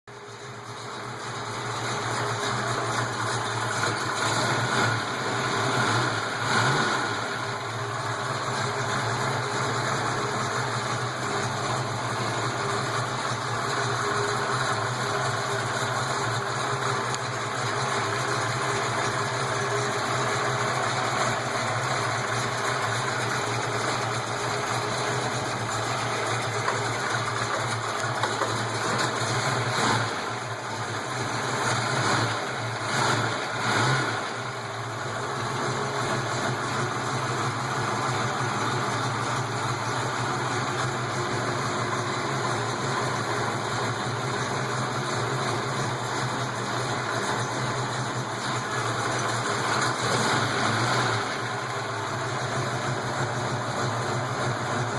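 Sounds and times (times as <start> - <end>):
engine idling with lifter tick: 0.1 - 54.9.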